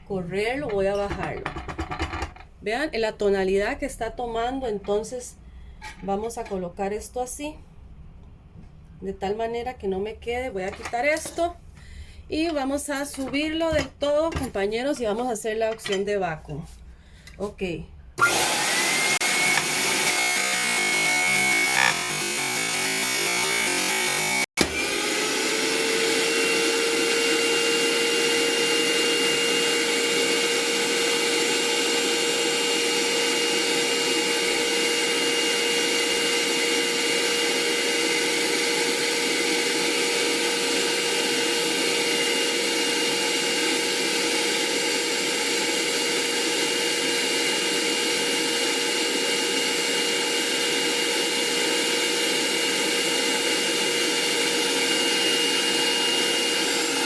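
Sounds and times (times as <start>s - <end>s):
vacuum motor whining: 18.2s - 57.0s.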